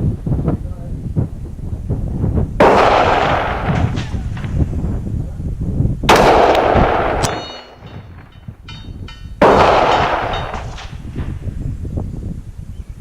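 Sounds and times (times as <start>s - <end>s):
wind rumbling on microphone: 0.0s - 13.0s
rifle shot echoing: 2.6s - 4.8s, 6.1s - 8.4s, 9.4s - 11.4s
light metallic pings: 7.2s - 9.4s.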